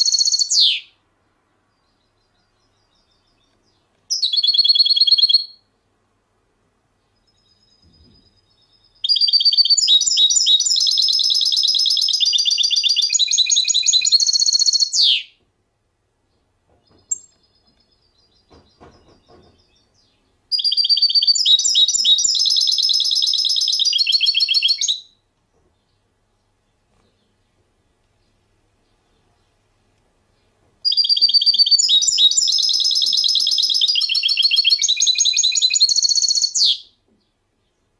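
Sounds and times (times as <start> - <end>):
songbird singing fast high trills: 0.0 - 0.9, 2.6 - 5.6, 8.4 - 15.4, 20.0 - 25.2, 30.9 - 36.9
soft faint bird notes: 6.7 - 15.4, 16.2 - 37.9.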